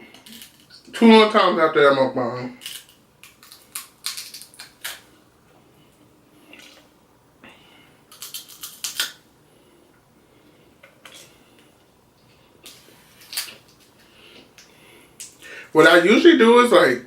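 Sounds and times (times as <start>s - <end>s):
crackling clicks of eating seafood: 0.1s - 0.9s, 2.6s - 5.1s, 8.1s - 9.2s, 12.6s - 15.4s.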